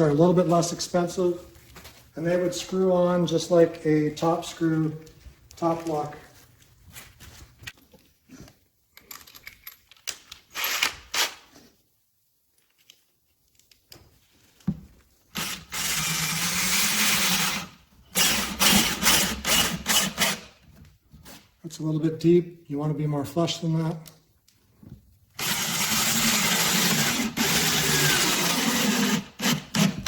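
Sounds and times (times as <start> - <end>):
cordless drill driving screw: 15.4 - 20.5, 25.4 - 30.0.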